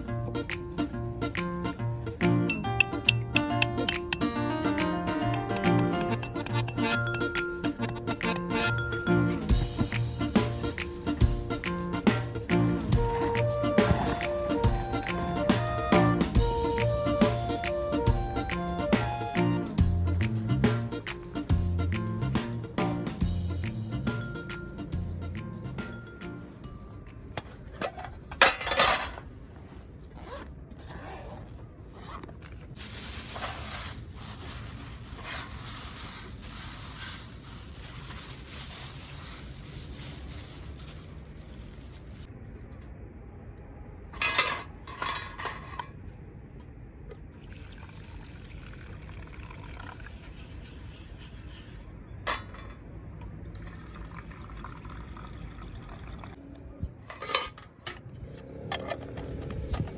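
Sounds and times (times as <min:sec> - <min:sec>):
liquid being poured: 0:47.4 - 0:50.3, 0:53.5 - 0:56.3.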